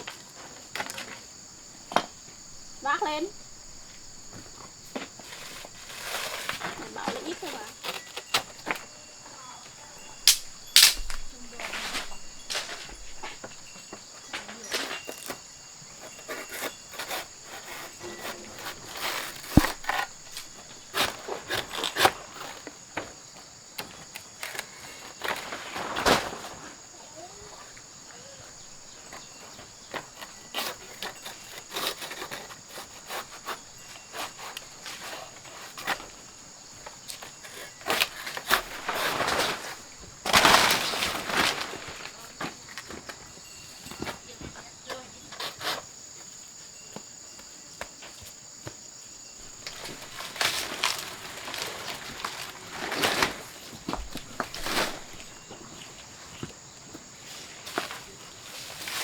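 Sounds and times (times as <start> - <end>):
insects shrilling: 0.0 - 45.9
rustles and scrapes of people working: 0.0 - 59.0.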